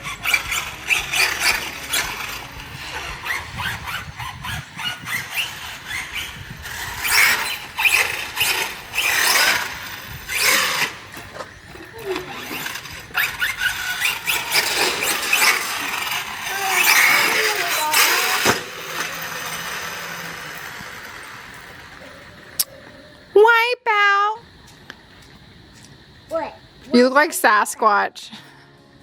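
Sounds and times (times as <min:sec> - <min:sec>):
electric motor whining in bursts: 0:00.0 - 0:22.6.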